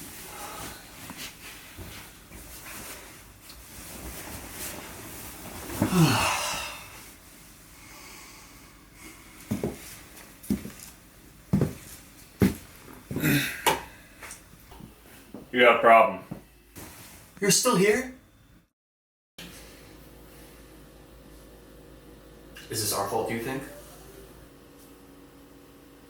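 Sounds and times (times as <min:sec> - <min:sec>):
person wheezing groan: 0:05.8 - 0:07.0, 0:13.1 - 0:13.9.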